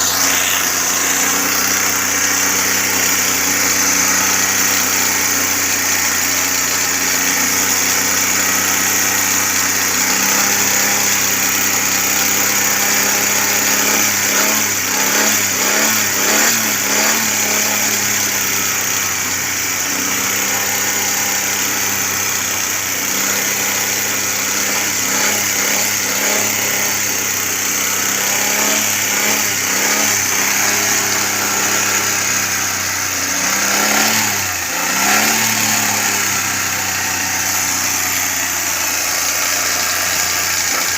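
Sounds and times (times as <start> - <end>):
car engine idling: 0.0 - 12.9, 24.0 - 40.9.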